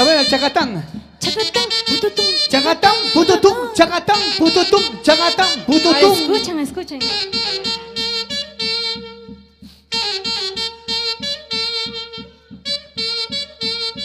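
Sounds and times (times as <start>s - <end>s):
saxophones playing melody: 0.0s - 14.0s
steady quick beat: 0.0s - 14.0s.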